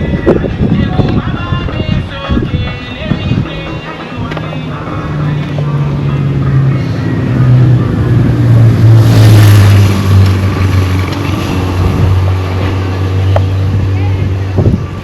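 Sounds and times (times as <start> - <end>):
vehicle engine humming: 0.7 - 15.0
vehicle passing rush: 3.3 - 15.0.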